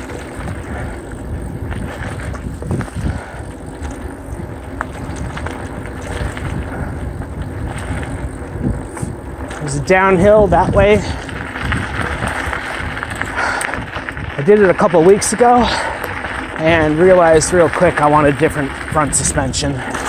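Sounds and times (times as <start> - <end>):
wind on microphone: 0.0 - 14.8
bike tyre and frame rumble: 0.0 - 20.0.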